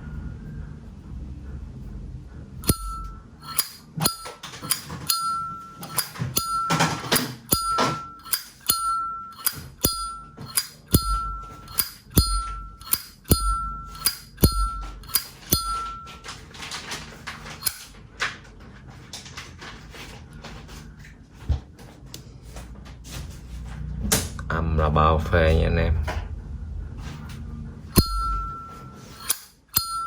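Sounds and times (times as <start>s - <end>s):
lighter lid clicking open and shut: 11.7s - 14.3s.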